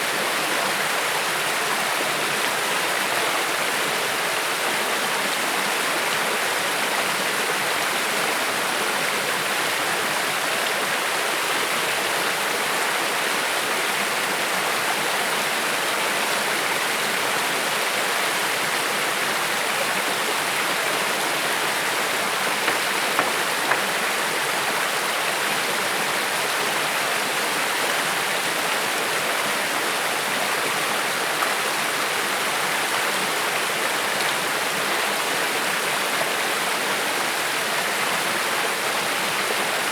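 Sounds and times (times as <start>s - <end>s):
creek water flowing: 0.0s - 39.9s.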